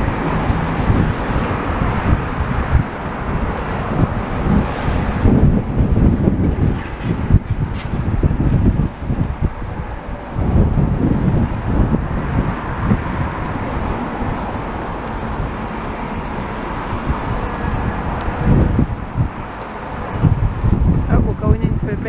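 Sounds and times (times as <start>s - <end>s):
traffic rumble: 0.0s - 22.0s
wind buffeting microphone: 0.0s - 22.0s.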